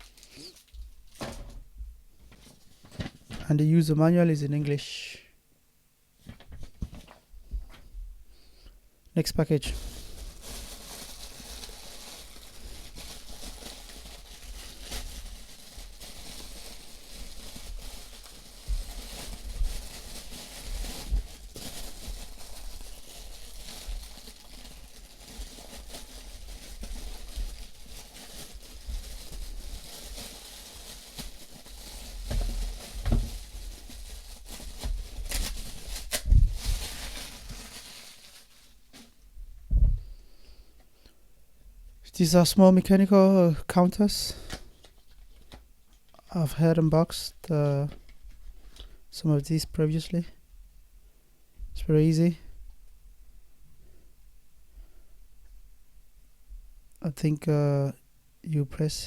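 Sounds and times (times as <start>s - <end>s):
packaging tearing: 0.0s - 1.2s, 9.7s - 39.1s
plastic wrapping rustling: 0.0s - 1.6s, 2.2s - 3.6s, 9.2s - 39.4s, 43.8s - 46.2s.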